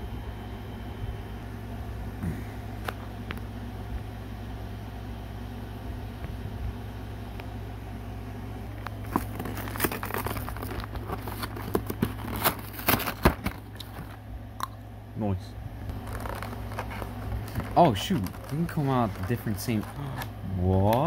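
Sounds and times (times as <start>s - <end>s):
steady low hum: 0.0s - 21.0s
packaging being opened: 8.9s - 14.2s, 15.9s - 20.4s.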